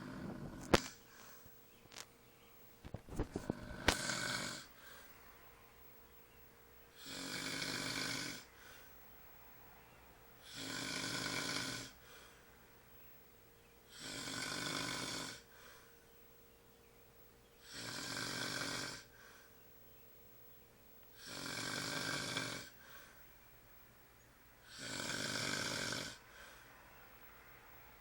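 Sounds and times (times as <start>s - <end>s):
man snoring: 0.0s - 1.4s, 3.2s - 5.0s, 6.9s - 8.7s, 10.4s - 12.2s, 13.9s - 15.6s, 17.6s - 19.3s, 21.1s - 23.1s, 24.6s - 26.5s.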